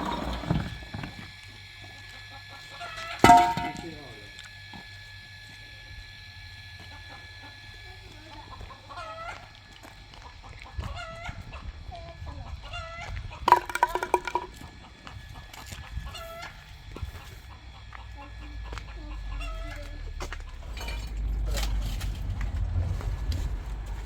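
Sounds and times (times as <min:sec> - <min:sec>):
chickens clucking: 0:08.3 - 0:20.6.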